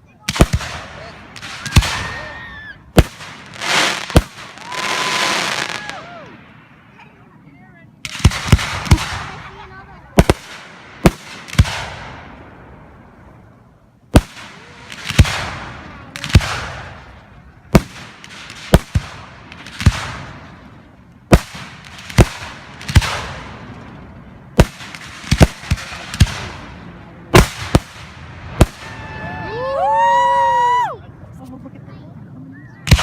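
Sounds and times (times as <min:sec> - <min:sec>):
fireworks booming: 0:00.2 - 0:07.1, 0:08.0 - 0:13.4, 0:14.1 - 0:29.4
fireworks hiss: 0:03.0 - 0:05.9.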